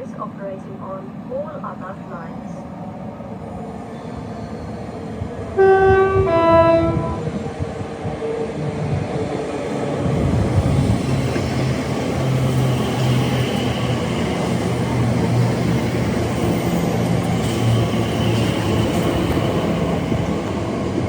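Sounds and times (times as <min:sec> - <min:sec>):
train passing on rails: 0:00.0 - 0:21.0
train horn two notes: 0:05.6 - 0:07.3.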